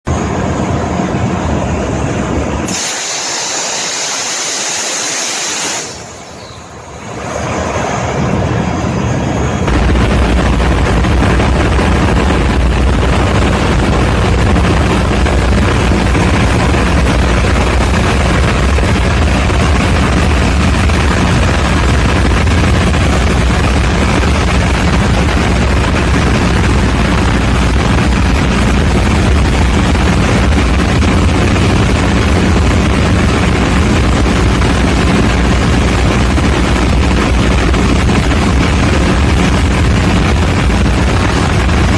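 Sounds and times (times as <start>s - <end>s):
high hiss: 2.7s - 7.3s
diesel engine rumbling: 5.8s - 41.9s.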